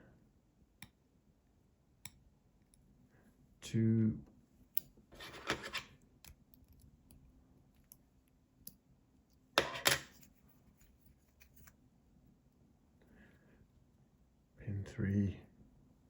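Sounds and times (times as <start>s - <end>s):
small metal clicks and scrapes: 5.1s - 6.9s.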